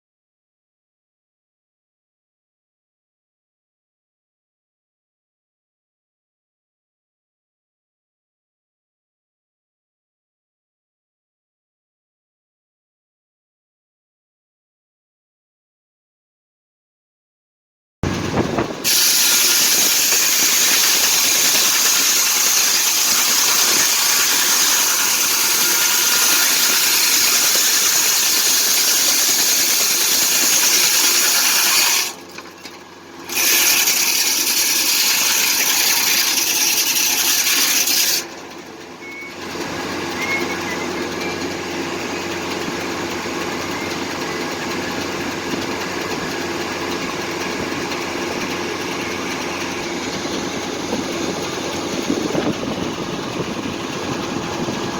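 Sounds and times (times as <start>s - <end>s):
engine hum: 18.0s - 33.3s, 38.1s - 54.9s
circular sawmill rushing noise: 18.0s - 54.9s.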